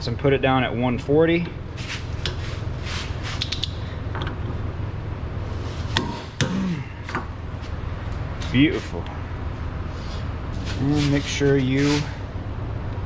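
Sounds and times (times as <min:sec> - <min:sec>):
steady low hum: 0:00.0 - 0:13.0.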